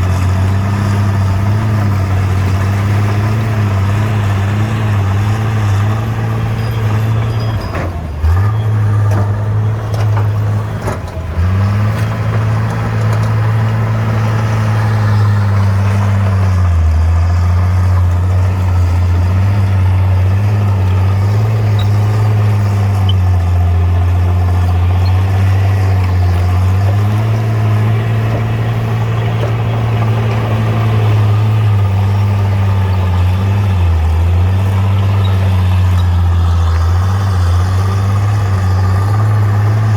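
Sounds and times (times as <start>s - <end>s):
diesel bulldozer engine running: 0.0s - 39.9s.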